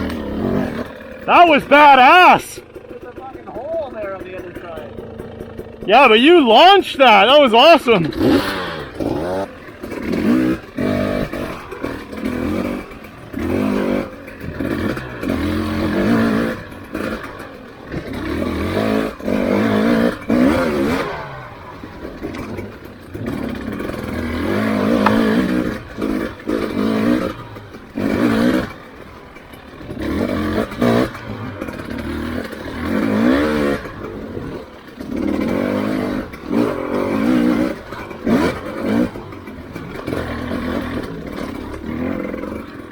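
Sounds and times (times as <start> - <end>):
dirt bike engine revving: 0.0 - 42.9
knocks and clatter: 22.1 - 32.8.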